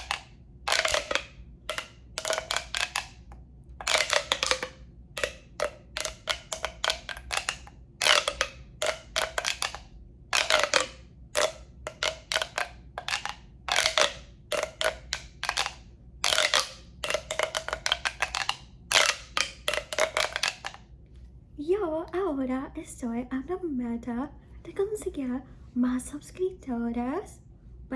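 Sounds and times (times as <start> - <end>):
sharp taps on a tube: 0.0 - 20.8.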